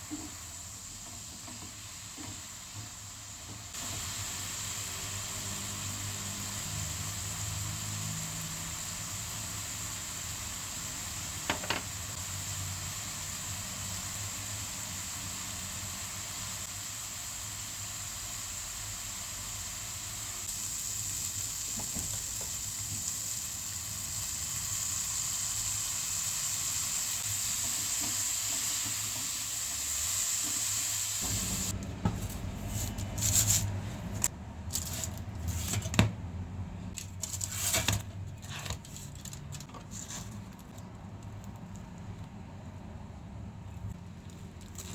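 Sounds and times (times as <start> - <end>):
food sizzling in a frying pan: 0.0 - 31.8.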